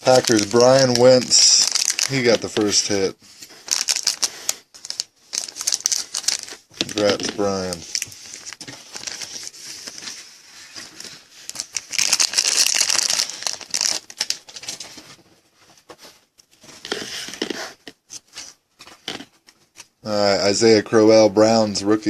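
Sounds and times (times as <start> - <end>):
wrapper crinkling and tearing: 0.0 - 10.2, 10.8 - 15.0.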